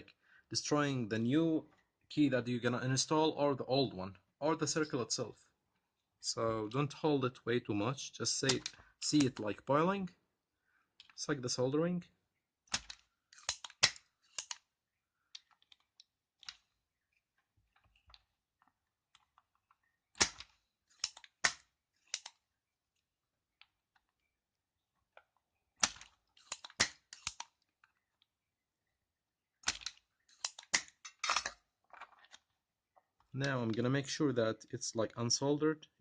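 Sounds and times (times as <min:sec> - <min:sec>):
solder sucker snapping and clicking: 0:12.7 - 0:14.6, 0:29.6 - 0:31.6.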